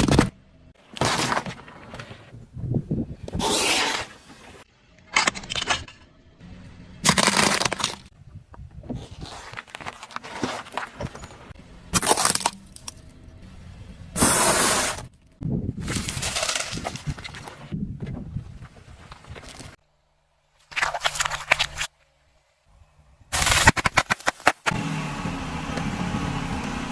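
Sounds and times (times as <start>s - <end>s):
objects crushed under car tyre: 0.9s - 2.0s, 7.0s - 8.1s, 9.6s - 13.0s.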